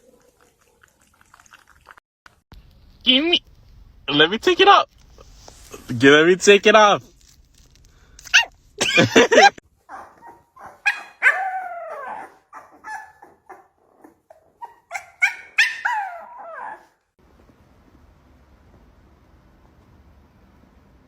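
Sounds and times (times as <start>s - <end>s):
dog yipping and whining: 8.3s - 8.5s, 9.8s - 17.0s.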